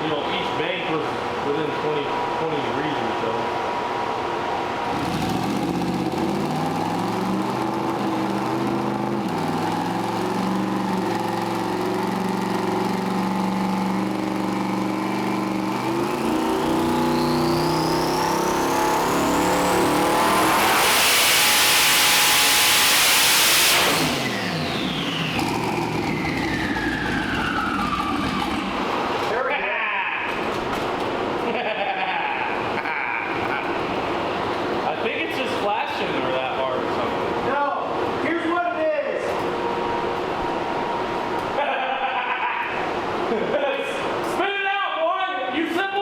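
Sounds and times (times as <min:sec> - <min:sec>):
turbo whine: 0:04.4 - 0:29.3, 0:39.4 - 0:43.3
engine running at full throttle: 0:04.8 - 0:29.3.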